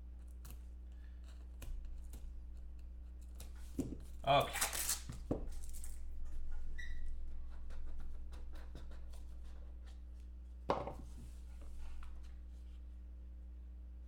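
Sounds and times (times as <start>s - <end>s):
low electrical hum: 0.0s - 14.0s
cards rustling and clicking: 3.2s - 6.0s.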